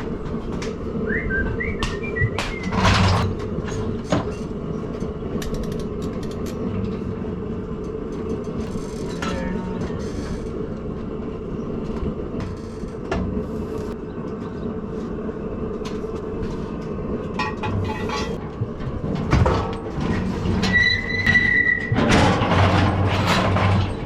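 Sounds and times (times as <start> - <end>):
steady mechanical hum: 0.0 - 24.0
metal gates clanking and rattling: 2.5 - 7.2, 7.8 - 10.7, 17.3 - 24.0
high-pitched squeal: 20.6 - 22.1.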